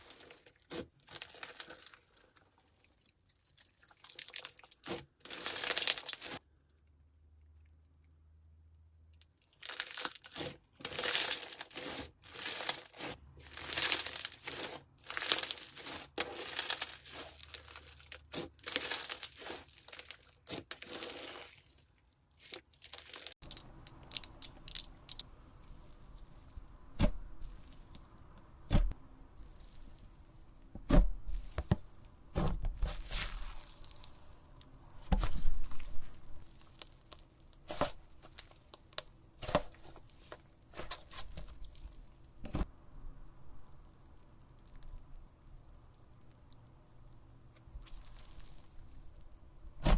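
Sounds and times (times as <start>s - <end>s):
slime crackling and popping: 0.0s - 6.4s, 9.3s - 28.0s, 31.4s - 41.8s.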